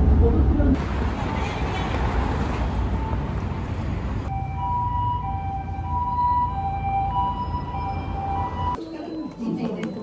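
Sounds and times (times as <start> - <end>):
two-tone ambulance siren: 2.8 - 9.9.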